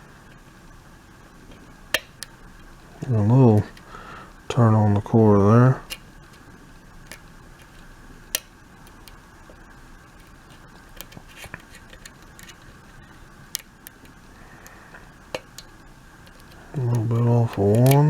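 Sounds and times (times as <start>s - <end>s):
lock pick clicking: 5.9s - 6.1s, 7.1s - 9.2s.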